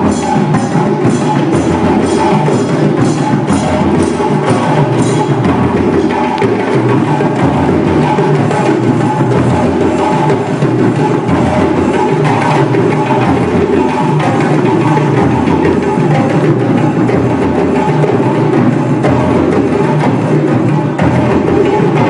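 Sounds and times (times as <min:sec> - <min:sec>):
drums and hand percussion: 0:00.0 - 0:22.0.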